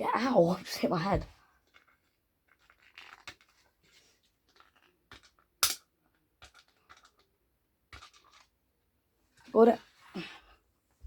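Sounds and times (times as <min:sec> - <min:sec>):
plastic bricks clicking: 0:04.5 - 0:07.3, 0:07.9 - 0:08.5.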